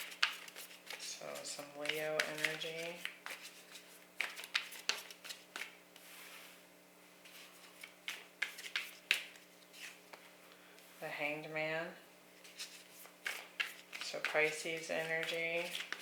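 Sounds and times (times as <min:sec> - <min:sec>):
cards snapping and tapping: 0:00.0 - 0:01.0, 0:01.6 - 0:03.5, 0:04.2 - 0:05.8, 0:07.8 - 0:09.5.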